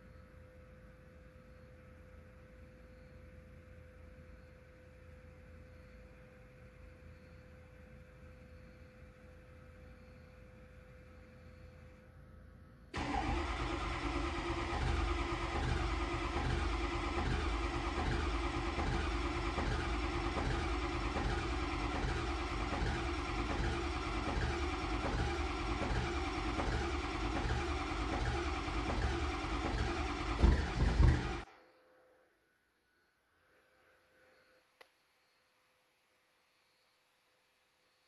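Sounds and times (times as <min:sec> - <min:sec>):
diesel engine running rough: 0:13.0 - 0:31.5
loud engine thumps: 0:14.5 - 0:31.5.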